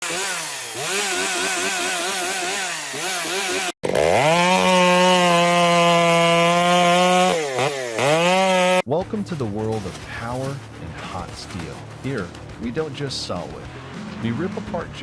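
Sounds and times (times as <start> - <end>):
chainsaw engine revving: 0.0 - 8.8.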